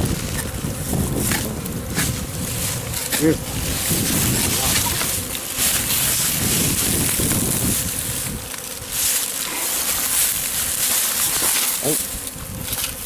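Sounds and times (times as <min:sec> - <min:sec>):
wind buffeting microphone: 0:00.0 - 0:09.0, 0:12.1 - 0:12.8
bee swarm buzzing: 0:00.0 - 0:13.0.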